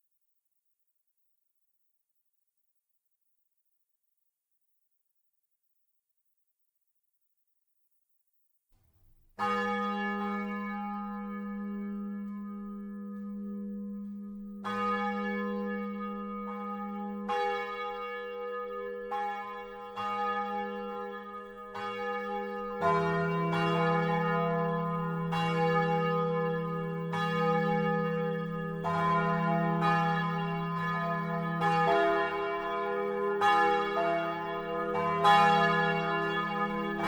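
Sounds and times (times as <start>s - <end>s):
church bells ringing: 9.4s - 37.0s.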